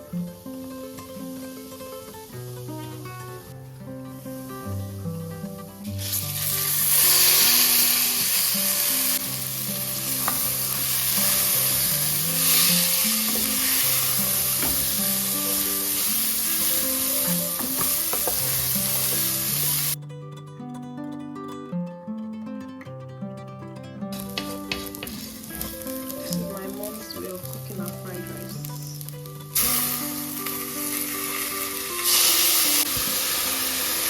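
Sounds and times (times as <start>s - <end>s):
acoustic guitar music: 0.0s - 34.0s
food sizzling in hot oil: 5.8s - 20.0s, 24.2s - 34.0s.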